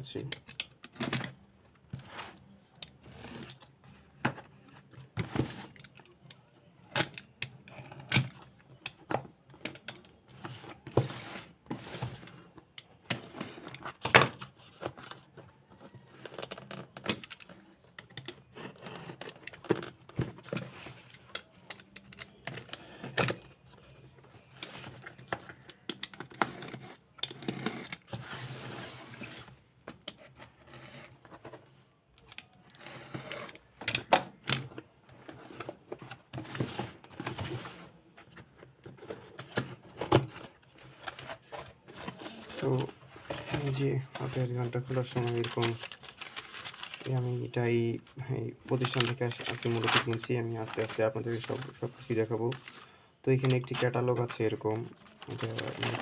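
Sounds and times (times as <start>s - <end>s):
cardboard packaging being opened: 35.3s - 47.6s, 48.6s - 56.0s.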